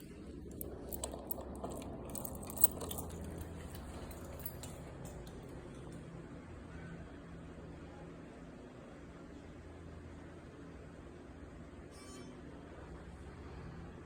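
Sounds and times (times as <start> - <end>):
light clicks and rattles: 0.0 - 6.1
low steady hum: 0.0 - 11.4.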